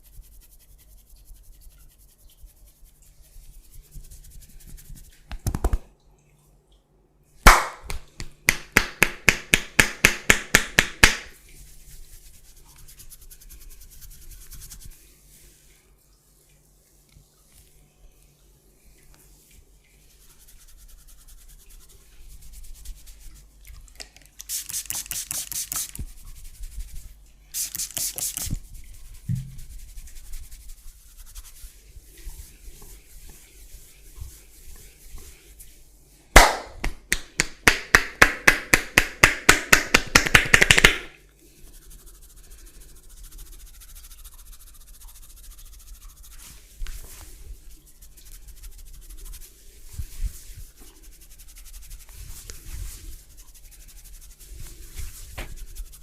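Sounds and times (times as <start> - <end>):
hands rubbing skin and hair: 0.0 - 5.9, 7.4 - 17.8, 19.0 - 56.0
rapid massage slaps: 3.8 - 5.9, 7.4 - 14.9, 24.5 - 27.0, 36.4 - 41.2.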